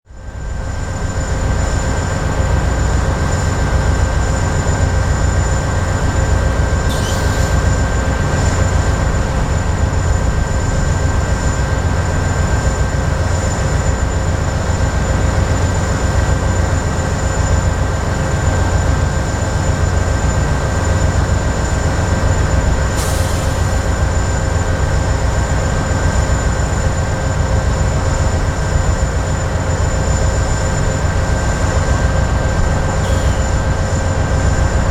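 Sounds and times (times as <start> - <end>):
diesel locomotive rumbling: 0.1 - 34.9
brief high hisses: 6.9 - 7.9, 23.0 - 23.8.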